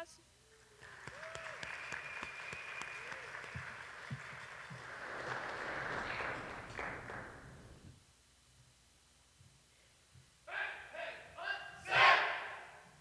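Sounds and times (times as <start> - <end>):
audience applauding: 0.6 - 8.0.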